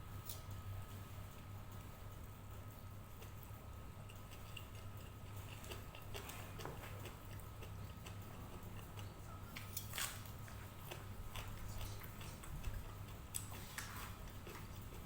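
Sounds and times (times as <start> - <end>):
steady low hum: 0.0 - 15.0
faint clicks and ticks: 0.2 - 9.8.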